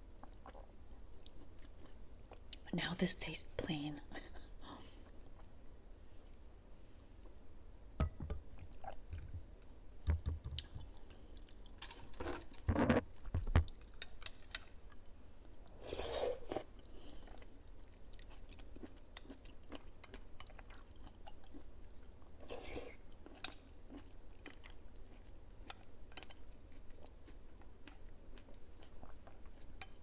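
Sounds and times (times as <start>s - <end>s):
chewing soft jelly: 0.1s - 2.6s, 4.7s - 5.6s, 13.2s - 30.0s.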